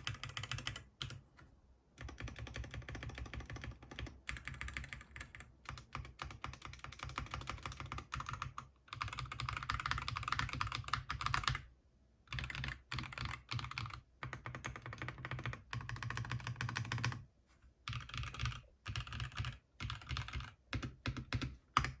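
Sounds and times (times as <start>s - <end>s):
mechanical keyboard typing: 0.0s - 1.2s, 2.0s - 11.7s, 12.3s - 17.2s, 17.9s - 22.0s.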